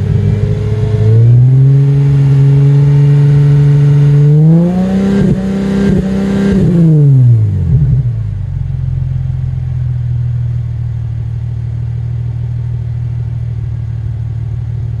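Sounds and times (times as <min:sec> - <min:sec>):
car engine revving then idling: 0:00.0 - 0:15.0.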